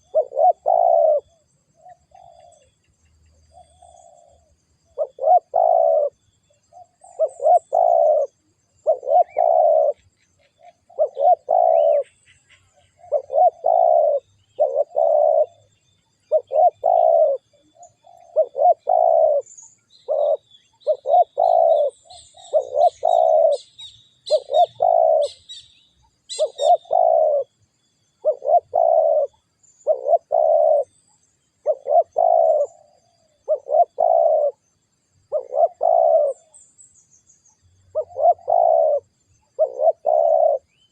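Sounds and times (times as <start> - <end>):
dove cooing: 0.0 - 2.7, 3.5 - 25.7, 26.3 - 27.5, 28.2 - 31.0, 31.6 - 34.7, 35.3 - 36.6, 37.8 - 40.9.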